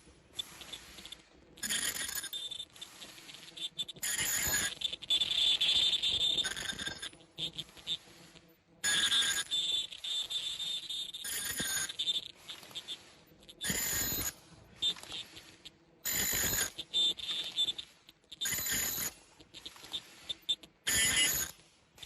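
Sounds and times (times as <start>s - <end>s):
high ringing tone: 0.4s - 3.0s, 3.6s - 8.0s, 8.8s - 15.2s, 16.1s - 17.8s, 18.4s - 19.2s, 20.9s - 21.5s.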